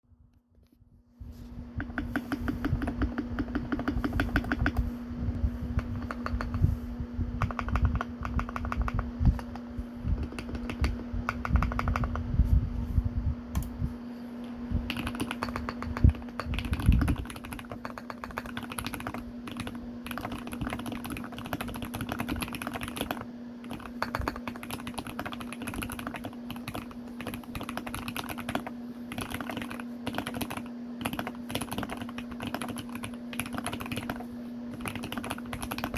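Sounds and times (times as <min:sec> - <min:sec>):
low hum: 0:00.1 - 0:17.9
fast typing on mechanical keyboard: 0:01.8 - 0:04.8, 0:05.8 - 0:06.6, 0:07.4 - 0:12.2, 0:14.9 - 0:35.9.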